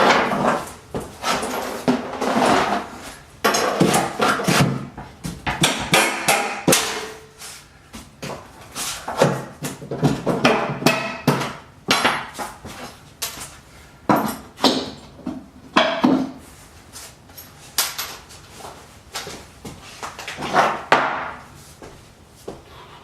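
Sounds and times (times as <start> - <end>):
hammer striking nails: 5.5 - 7.1, 10.2 - 12.3.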